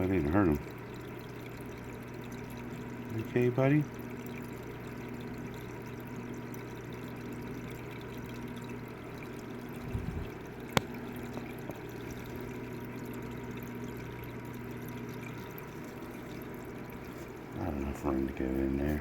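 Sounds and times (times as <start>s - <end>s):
water pouring into tank: 0.0s - 19.0s
low hum: 9.6s - 14.0s
soft low bumps: 9.8s - 10.4s.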